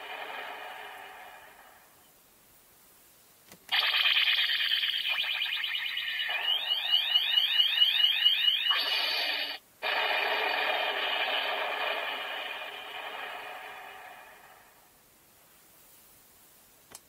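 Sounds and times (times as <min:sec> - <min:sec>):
electronic rising sweeps: 0:03.7 - 0:14.9.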